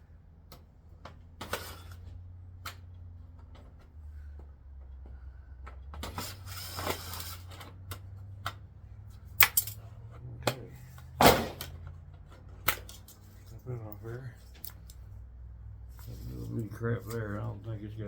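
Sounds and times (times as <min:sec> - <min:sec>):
low steady hum: 0:00.0 - 0:18.0
scraping rustle: 0:06.0 - 0:07.7, 0:15.9 - 0:17.6.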